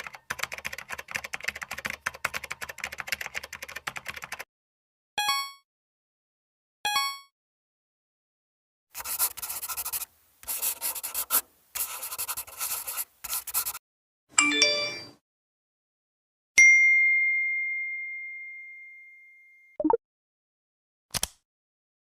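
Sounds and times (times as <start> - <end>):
scratchy rubbing noise: 9.0 - 13.8.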